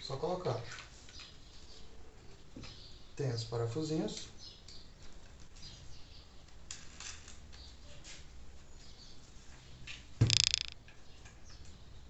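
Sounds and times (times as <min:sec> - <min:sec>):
plastic parts scraping and clicking: 0:10.3 - 0:10.8.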